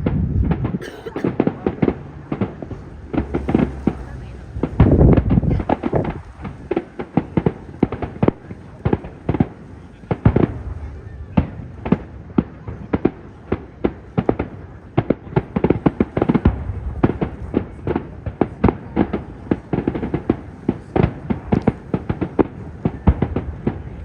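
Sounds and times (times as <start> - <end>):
fireworks bangs and crackles: 0.0 - 24.0
low rumble: 1.7 - 6.7, 16.5 - 17.8.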